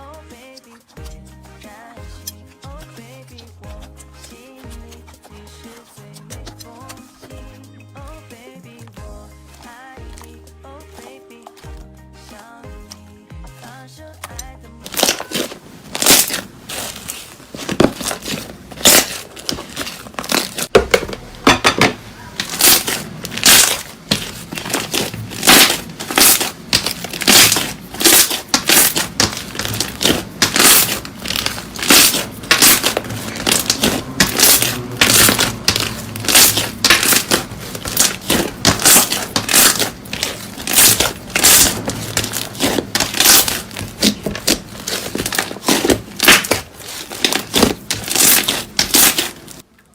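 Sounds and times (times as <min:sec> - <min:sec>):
slime squishing by hand: 0:14.9 - 0:49.9.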